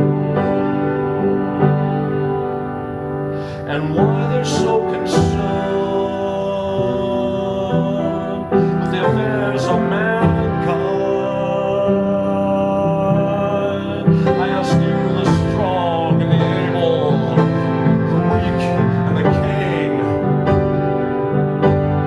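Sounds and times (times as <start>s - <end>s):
slow piano music: 0.0s - 22.0s
person singing: 3.5s - 21.0s.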